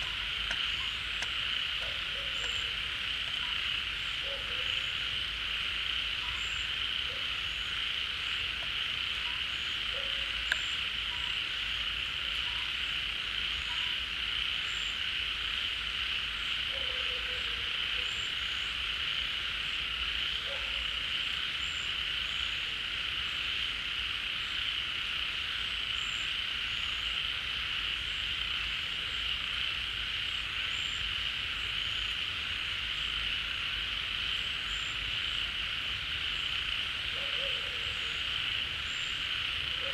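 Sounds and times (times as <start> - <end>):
low frog croaks: 0.0 - 22.6
chorus of frogs trilling: 0.0 - 39.9.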